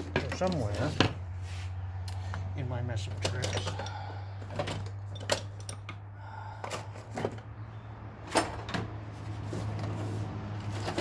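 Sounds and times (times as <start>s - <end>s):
tools clicking and knocking: 3.1s - 7.5s.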